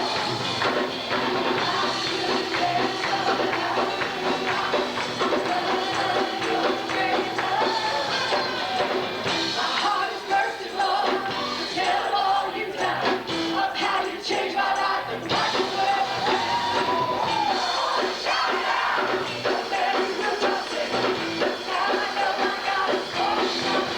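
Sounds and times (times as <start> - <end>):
percussion strokes: 0.0 - 23.9
worship band with singers: 0.0 - 23.9.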